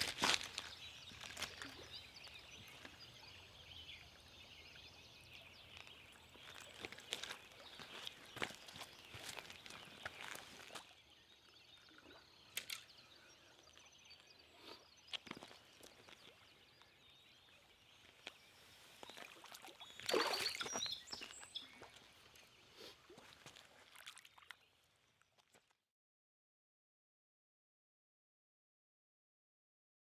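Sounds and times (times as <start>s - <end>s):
faint outdoor ambience: 0.0s - 24.0s.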